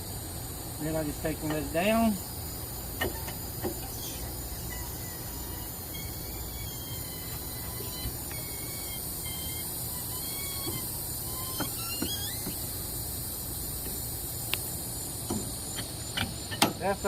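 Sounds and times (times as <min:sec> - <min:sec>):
steady hiss: 0:00.0 - 0:17.0
crane creaking and clicking: 0:03.0 - 0:12.7.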